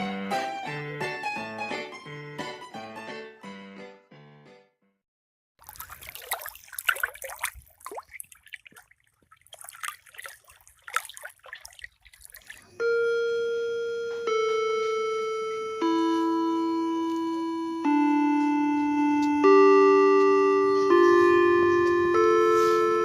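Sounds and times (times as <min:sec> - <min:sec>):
splashing trickling water: 0:05.6 - 0:12.8
long ringing notes: 0:12.8 - 0:23.0.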